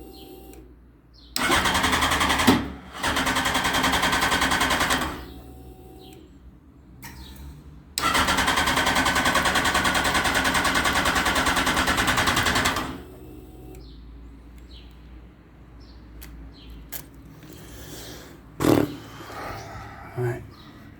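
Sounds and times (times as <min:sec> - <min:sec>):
motorcycle electric starter cranking: 0:01.4 - 0:06.1, 0:08.0 - 0:13.9.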